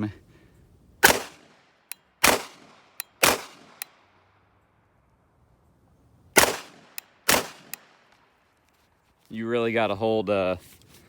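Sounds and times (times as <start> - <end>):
pistol shots with echo: 1.0 - 1.5, 2.2 - 3.9, 6.4 - 7.9.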